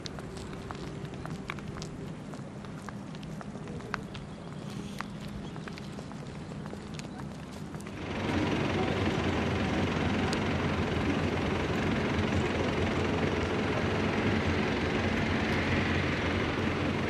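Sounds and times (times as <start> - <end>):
heavy vehicle engine running: 4.5 - 17.0.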